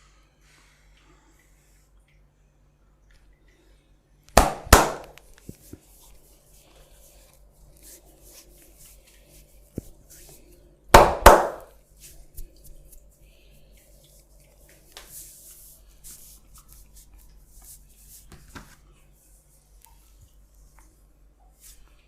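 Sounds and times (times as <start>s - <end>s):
sharp hand smacks: 4.3s - 5.3s.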